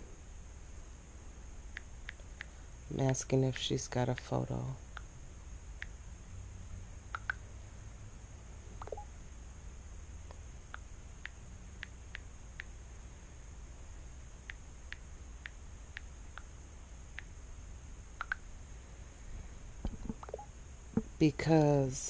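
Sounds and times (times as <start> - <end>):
typing taps on phone: 7.2 - 7.4, 8.8 - 9.1.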